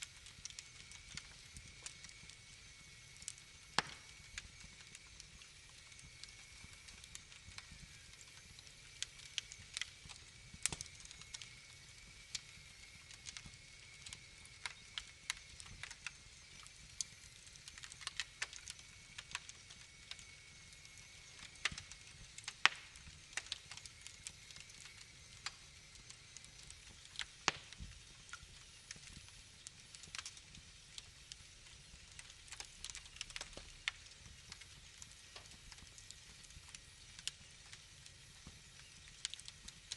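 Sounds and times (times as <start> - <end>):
faint steady hiss: 0.0 - 39.9
wood fire crackling: 0.0 - 39.9.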